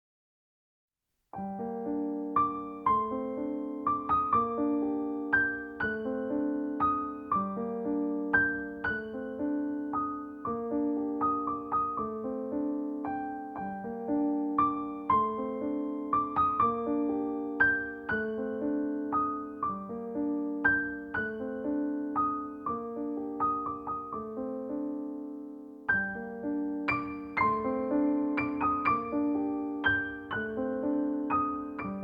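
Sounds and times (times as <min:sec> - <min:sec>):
electric piano melody: 0:01.4 - 0:32.0.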